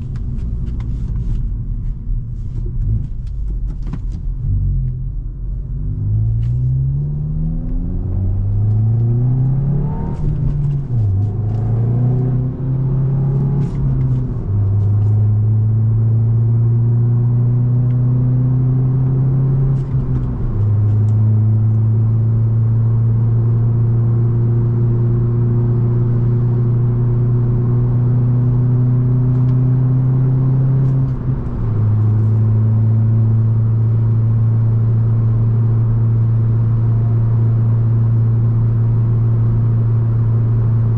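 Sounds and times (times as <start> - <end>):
car engine accelerating through gears: 0.0 - 40.9.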